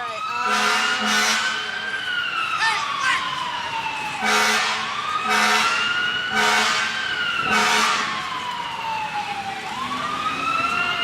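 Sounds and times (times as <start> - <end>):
fire engine siren wailing: 0.0 - 11.0
air horn blasts: 0.4 - 1.6, 4.2 - 8.1.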